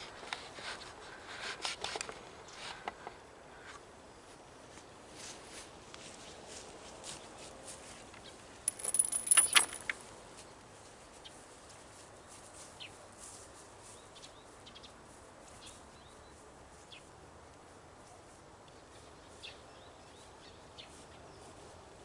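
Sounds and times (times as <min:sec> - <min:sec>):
outdoor background noise: 0:00.0 - 0:22.0
jingling clinking rattle: 0:08.6 - 0:10.0.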